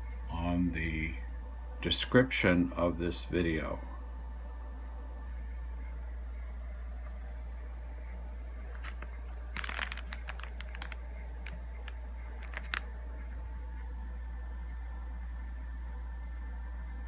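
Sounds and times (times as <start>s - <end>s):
low electrical hum: 0.0s - 17.0s
crackling clicks: 8.7s - 12.8s.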